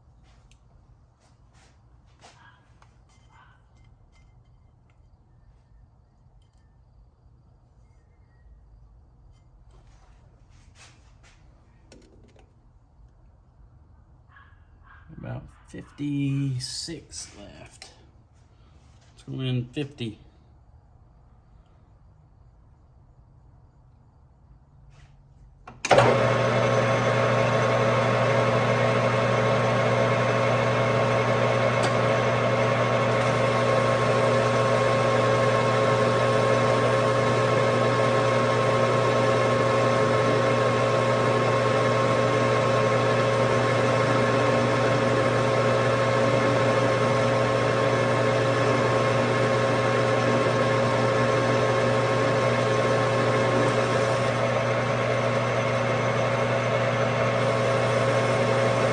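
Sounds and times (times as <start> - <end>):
metal lathe motor humming: 25.9 - 58.9.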